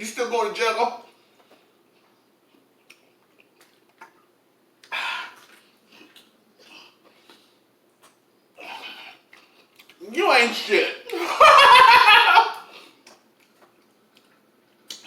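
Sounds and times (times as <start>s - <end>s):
chewing and lip smacking: 1.4s - 8.3s, 9.0s - 10.0s, 12.8s - 15.0s.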